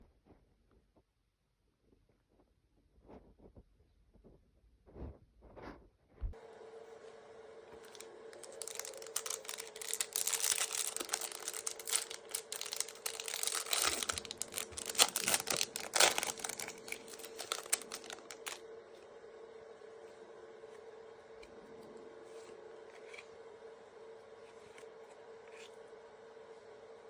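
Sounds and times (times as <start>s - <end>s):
faint steady hum: 0.0s - 27.0s
foil wrapper crinkling and tearing: 7.8s - 18.6s.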